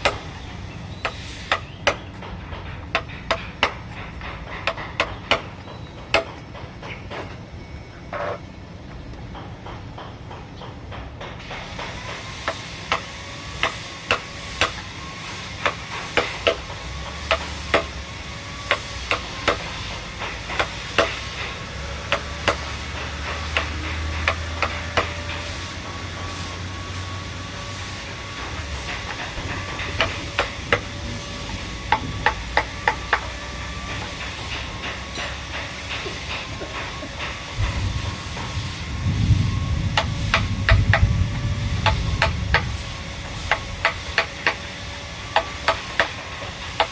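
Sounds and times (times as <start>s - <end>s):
hand tool striking wood: 0.0s - 0.3s, 1.0s - 7.4s, 9.4s - 14.9s, 15.6s - 26.4s, 28.5s - 38.5s, 41.8s - 42.8s, 43.4s - 46.9s.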